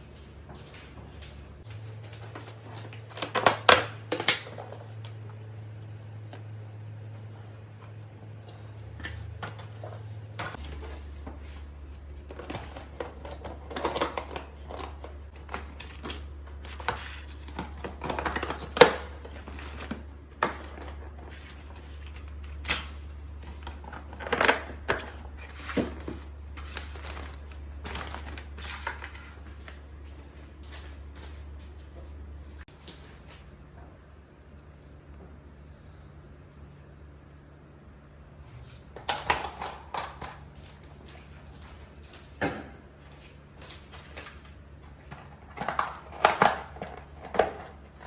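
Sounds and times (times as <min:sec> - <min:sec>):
low steady hum: 0:00.0 - 0:48.0
hands handling kitchen items: 0:07.3 - 0:33.5.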